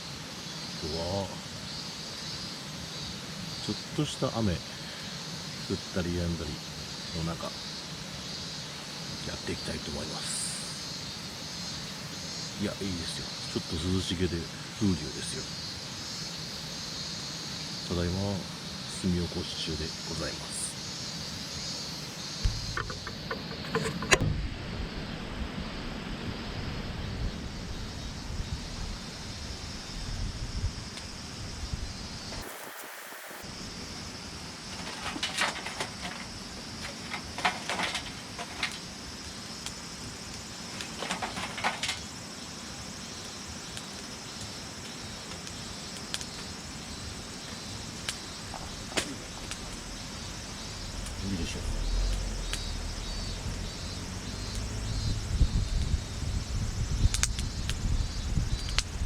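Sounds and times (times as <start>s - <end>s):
steady hiss: 0.0s - 59.0s
charcoal crackling and clicking: 22.4s - 24.2s, 34.7s - 42.2s, 43.1s - 55.0s, 57.0s - 57.8s, 58.5s - 59.0s.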